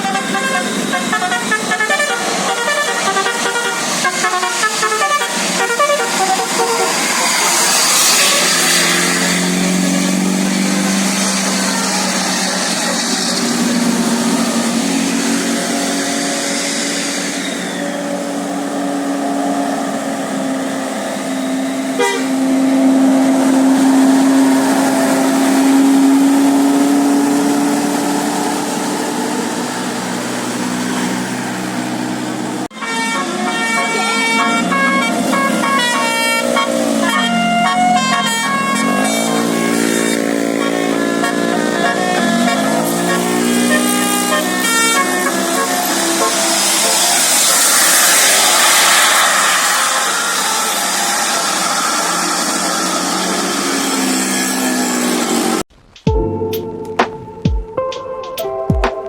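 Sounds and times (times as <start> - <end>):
musical bus horn: 0.0 - 17.4, 18.0 - 28.8, 32.6 - 49.0.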